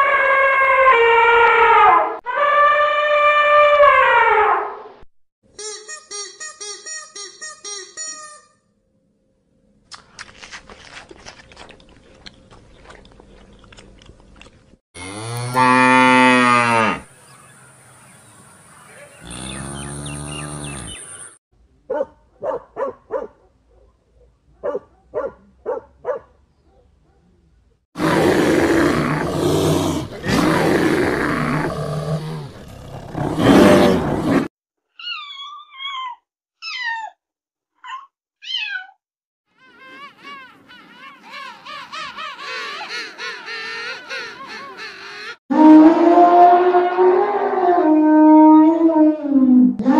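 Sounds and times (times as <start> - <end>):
harsh rough animal call: 19.1 - 21.3, 28.0 - 34.5
long pitched animal calls: 19.2 - 21.3.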